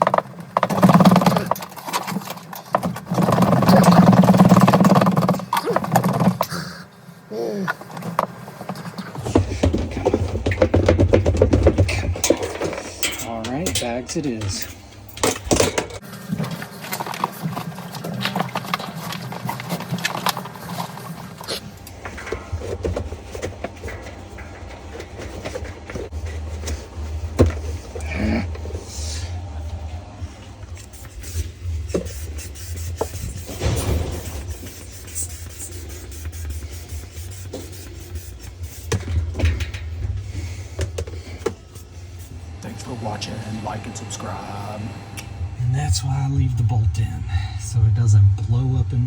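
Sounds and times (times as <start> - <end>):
rapid mechanical rattling: 0.0 - 6.5, 8.1 - 48.2
low rhythmic mechanical sound: 0.0 - 49.0
steady low hum: 3.1 - 49.0
metal clicks and knocks: 9.3 - 16.0.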